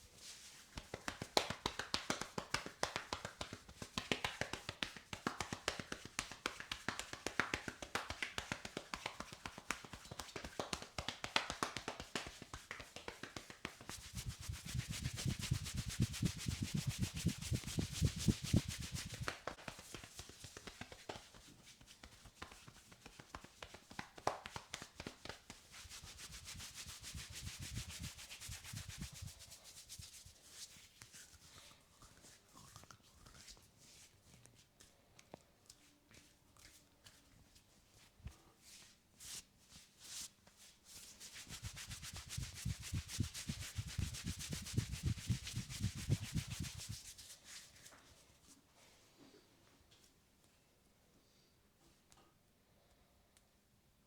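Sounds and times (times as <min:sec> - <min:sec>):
hands massaging head and hair: 0:00.0 - 0:48.7.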